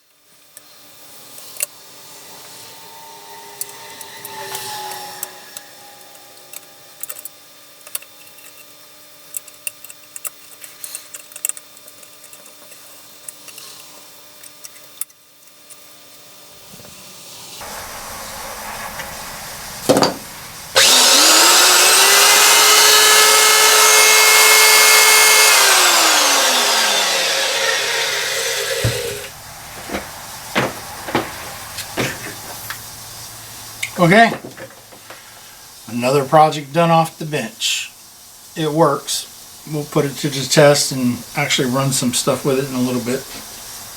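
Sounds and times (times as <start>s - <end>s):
router motor whining: 1.7s - 7.6s, 19.9s - 32.8s.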